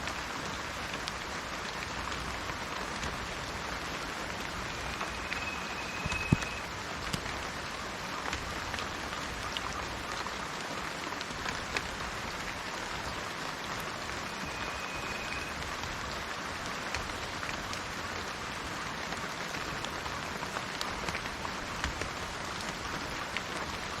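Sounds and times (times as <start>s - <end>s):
rain falling: 0.0s - 24.0s
bird whistling note: 4.6s - 6.7s, 14.2s - 15.6s.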